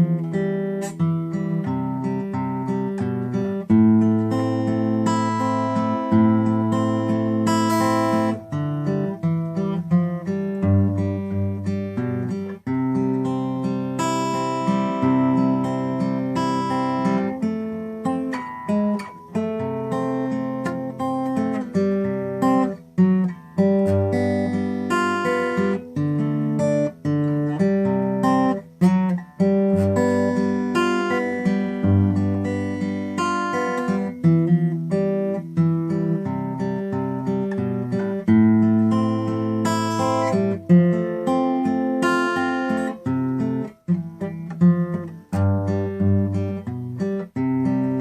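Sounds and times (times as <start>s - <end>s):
acoustic guitar playing: 0.0s - 48.0s.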